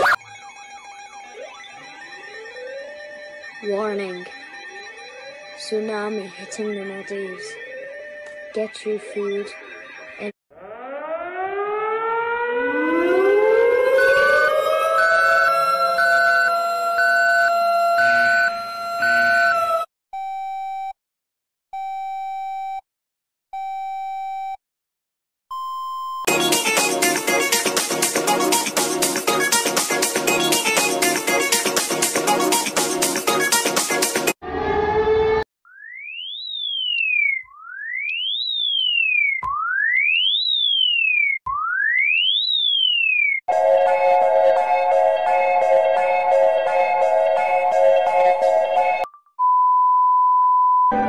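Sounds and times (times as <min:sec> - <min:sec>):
two-tone electronic alarm: 0:00.0 - 0:20.8, 0:35.7 - 0:49.6
music: 0:00.2 - 0:07.4, 0:26.3 - 0:34.4, 0:43.5 - 0:49.1
long electronic beeps: 0:09.2 - 0:19.4.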